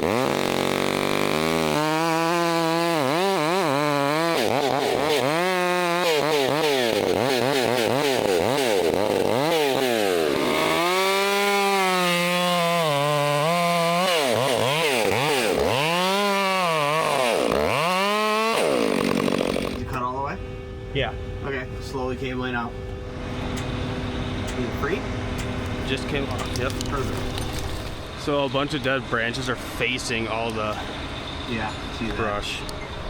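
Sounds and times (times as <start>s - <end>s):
chainsaw revving and cutting: 0.0s - 19.9s.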